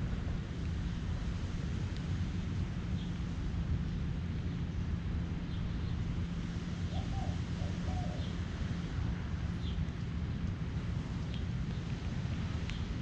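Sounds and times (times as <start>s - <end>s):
dove cooing: 6.9s - 8.3s
birds chirping: 6.9s - 8.4s.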